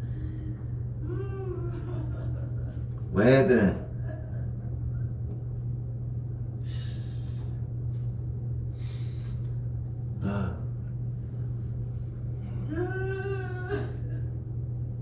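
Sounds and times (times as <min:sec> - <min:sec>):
low hum: 0:00.0 - 0:15.0
woman crying: 0:01.0 - 0:02.7, 0:12.6 - 0:14.4.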